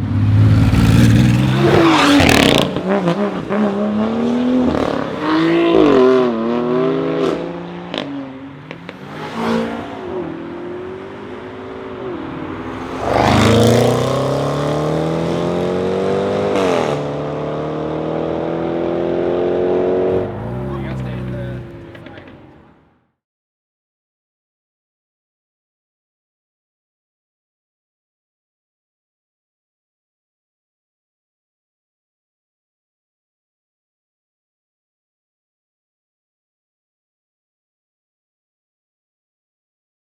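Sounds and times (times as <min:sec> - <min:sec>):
car engine accelerating hard: 0:00.0 - 0:22.9
exhaust cracks: 0:20.1 - 0:22.8.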